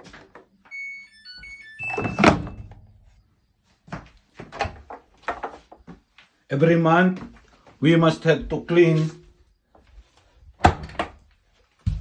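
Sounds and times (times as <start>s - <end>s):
electronic beep tune: 0.7s - 2.8s.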